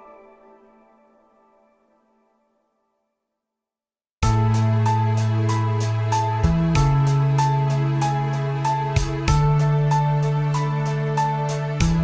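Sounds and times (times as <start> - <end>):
soft ambient music chord: 0.0 - 2.5.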